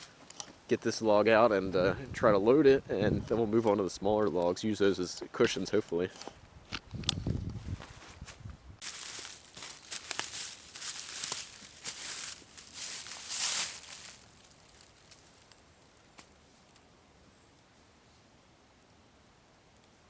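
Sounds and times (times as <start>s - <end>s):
footsteps crunching on ground: 6.0s - 16.8s.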